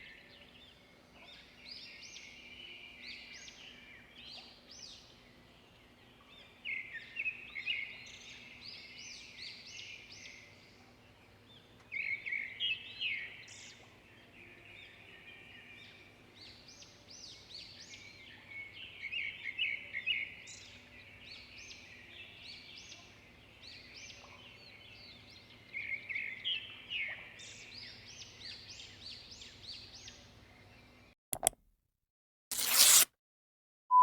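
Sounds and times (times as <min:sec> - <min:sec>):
brief click: 0:31.4 - 0:31.6.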